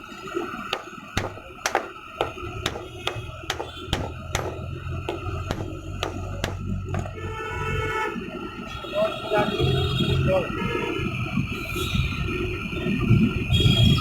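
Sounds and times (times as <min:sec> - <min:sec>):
hammer knocking on metal: 0:00.7 - 0:07.3.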